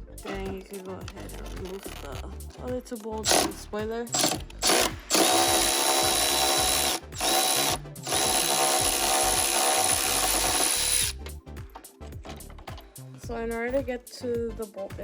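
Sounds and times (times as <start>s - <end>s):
power drill spinning out bolts: 3.2s - 11.2s.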